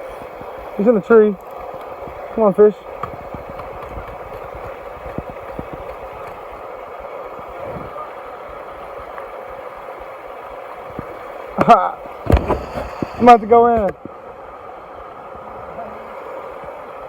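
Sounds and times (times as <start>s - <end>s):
creek water rushing: 0.0s - 17.0s
low bumps on microphone: 11.6s - 14.1s.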